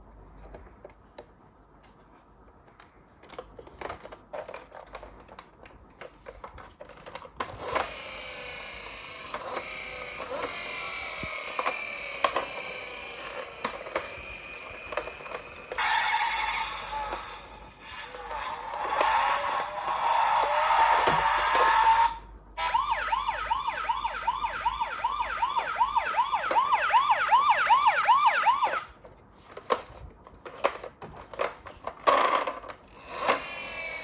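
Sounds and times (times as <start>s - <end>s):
toy siren tones: 7.8s - 19.7s, 20.6s - 28.9s
bright toy tone: 9.6s - 20.8s.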